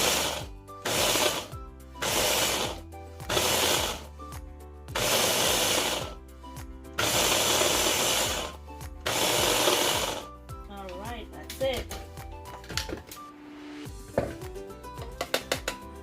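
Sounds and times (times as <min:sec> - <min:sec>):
blender chopping oats: 0:00.0 - 0:04.1, 0:04.9 - 0:06.2, 0:07.0 - 0:10.4.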